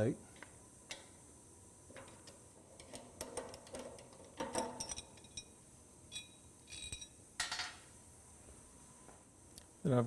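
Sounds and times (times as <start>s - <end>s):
light metal clinks and clicks: 3.7s - 5.5s, 6.1s - 7.8s.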